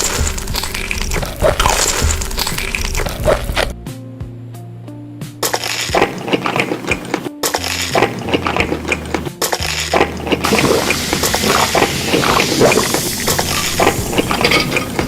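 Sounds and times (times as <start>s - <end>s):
background music with bass notes: 0.0s - 15.0s
utensils and dishes clinking: 5.4s - 15.0s.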